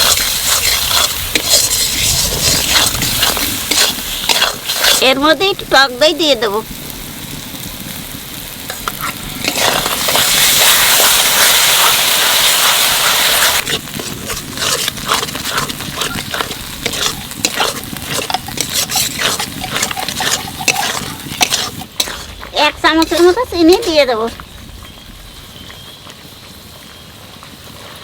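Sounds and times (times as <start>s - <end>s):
spatula scraping a pan: 0.0s - 5.6s, 8.7s - 24.5s
spices sizzling in hot oil: 0.0s - 28.0s.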